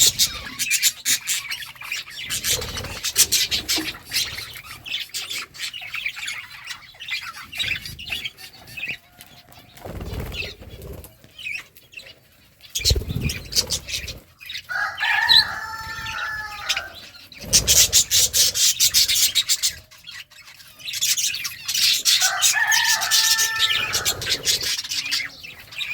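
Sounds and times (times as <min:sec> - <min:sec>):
budgerigars chattering and chirping: 0:00.0 - 0:25.9
wings fluttering: 0:02.3 - 0:04.8, 0:09.4 - 0:11.6, 0:12.7 - 0:19.8, 0:21.9 - 0:25.7.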